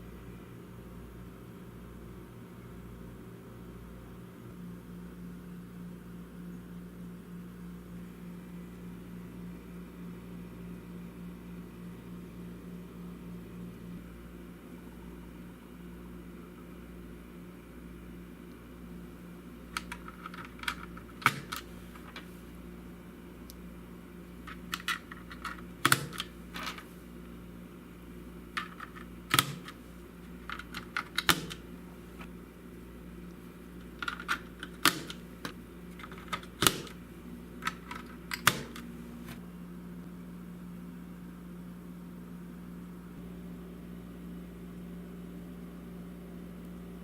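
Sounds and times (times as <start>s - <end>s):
steady low hum: 0.0s - 47.0s
mechanical keyboard clicks: 19.7s - 21.7s, 24.5s - 26.8s, 28.6s - 29.8s, 30.4s - 31.6s, 33.9s - 37.0s.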